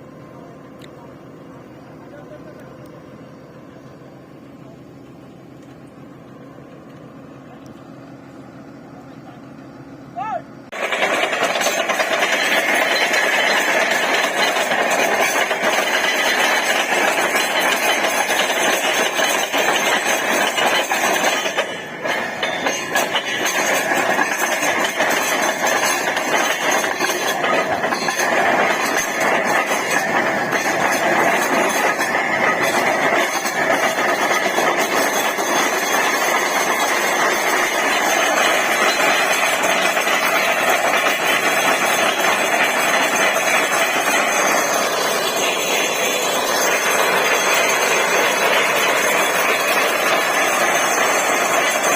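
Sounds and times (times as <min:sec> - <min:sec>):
drilling rig running: 0:00.0 - 0:51.9
rapid air hammer drilling: 0:10.7 - 0:51.9.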